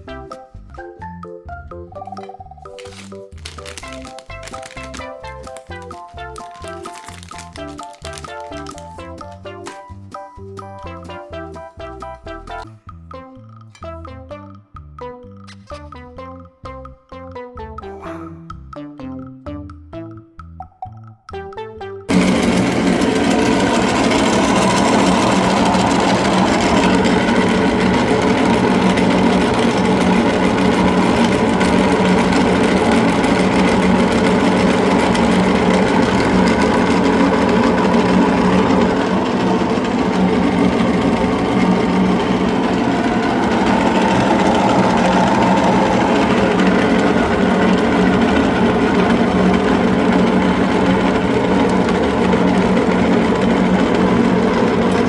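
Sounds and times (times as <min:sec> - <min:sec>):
electric meat grinder running: 0:02.7 - 0:09.8, 0:22.1 - 0:55.0.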